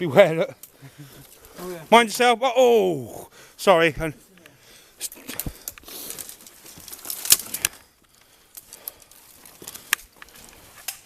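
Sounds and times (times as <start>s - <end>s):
twigs crackling and snapping: 0.5s - 2.0s, 4.4s - 11.0s
footsteps through undergrowth: 5.2s - 11.0s.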